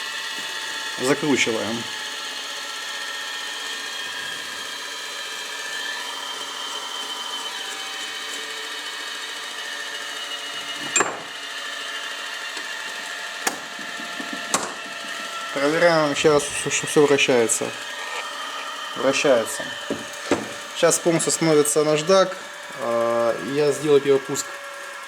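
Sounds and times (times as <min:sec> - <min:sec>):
bench grinder motor whine: 0:00.0 - 0:25.0.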